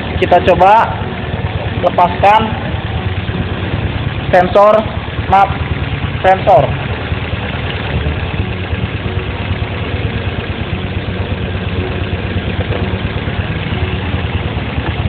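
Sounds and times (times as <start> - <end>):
petrol engine idling: 0.0 - 15.0.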